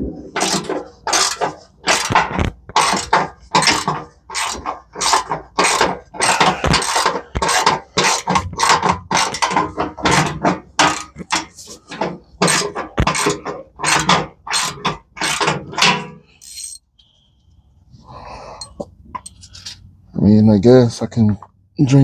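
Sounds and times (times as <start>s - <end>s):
ratchet wrench clicking: 16.4s - 16.8s.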